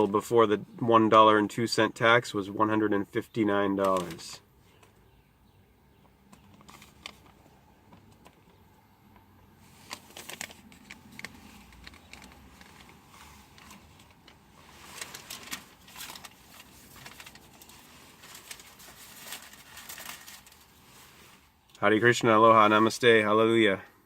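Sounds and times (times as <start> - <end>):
paper rustling: 3.8 - 4.4, 6.4 - 8.2, 9.6 - 21.5.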